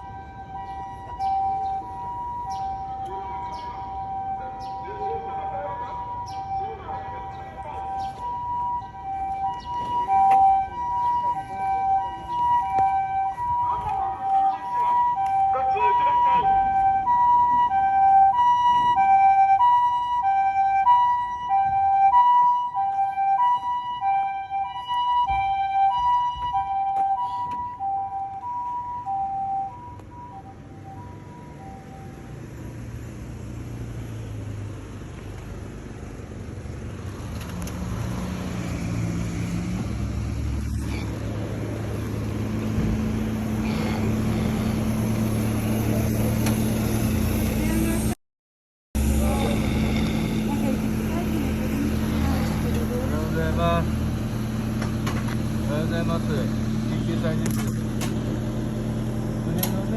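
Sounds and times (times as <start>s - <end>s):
ambulance two-tone siren: 0.0s - 33.0s
vehicle engine humming: 0.0s - 48.2s, 49.0s - 59.9s.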